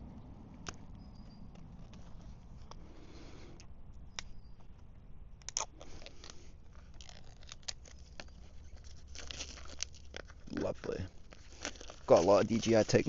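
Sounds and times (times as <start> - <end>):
packaging clicks and rustles: 5.5 - 13.0.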